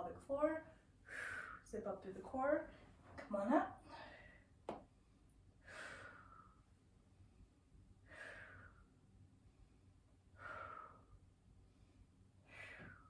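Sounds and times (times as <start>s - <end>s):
woman breathing out: 5.6s - 6.6s, 8.0s - 9.0s, 10.4s - 11.2s, 12.4s - 13.0s.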